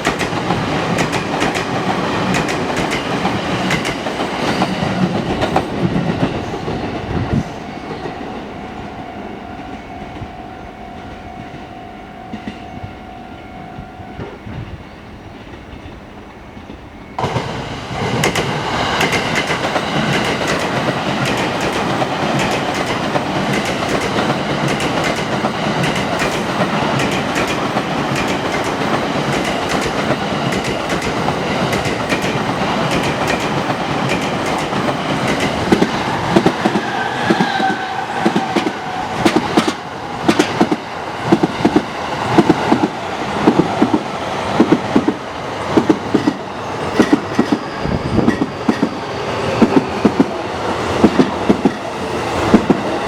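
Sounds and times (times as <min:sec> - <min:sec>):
train wheels rumbling on rails: 0:00.0 - 0:13.0, 0:14.2 - 0:53.0
wheels clacking over rail joints: 0:17.2 - 0:45.2.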